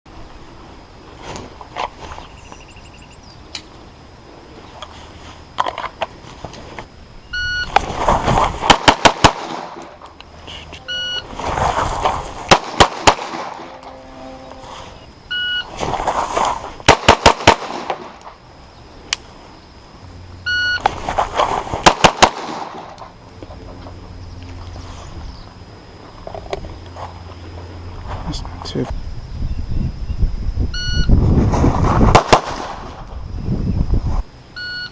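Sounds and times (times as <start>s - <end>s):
pistol shots: 8.6s - 9.9s, 12.4s - 13.8s, 16.9s - 18.2s, 21.8s - 22.9s, 32.1s - 32.9s
shot timer beep: 10.8s - 11.3s.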